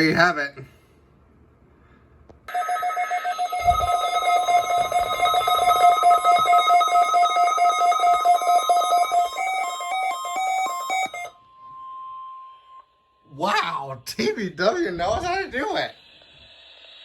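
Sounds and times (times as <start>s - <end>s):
rapid electronic alarm beeping: 2.5s - 13.4s.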